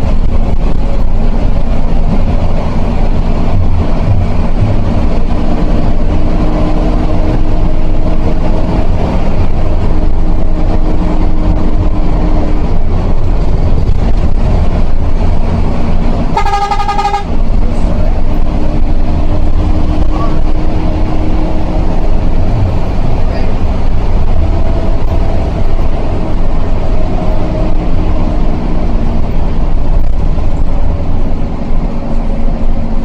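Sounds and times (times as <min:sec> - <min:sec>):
bus engine and road rumble: 0:00.0 - 0:33.0
vehicle horn blast: 0:16.3 - 0:17.4.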